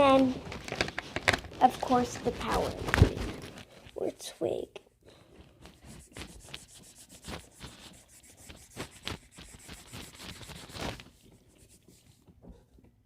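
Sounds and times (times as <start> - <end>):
pencil scratching on paper: 5.6 - 12.3.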